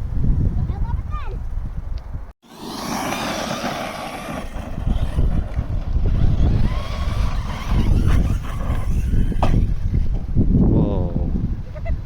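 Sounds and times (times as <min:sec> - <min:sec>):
rc truck motor and tyres rushing: 0:02.4 - 0:10.7
gusty low rumble: 0:02.9 - 0:12.0.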